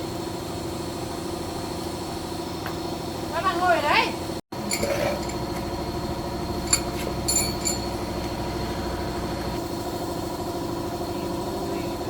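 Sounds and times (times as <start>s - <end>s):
motorcycle engine idling: 4.6s - 12.0s
light metallic clinks of tools: 6.6s - 8.0s.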